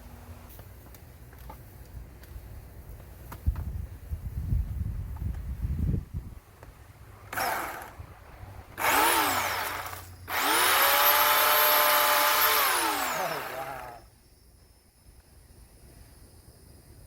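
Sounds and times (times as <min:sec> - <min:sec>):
electric chainsaw motor whining: 0:07.3 - 0:08.0, 0:08.8 - 0:14.1.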